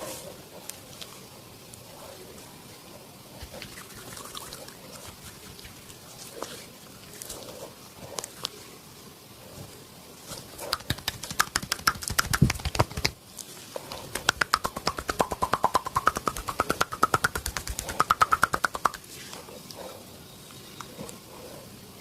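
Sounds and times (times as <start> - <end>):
rhythmic hand massage strikes: 10.6 - 13.2, 14.1 - 19.1.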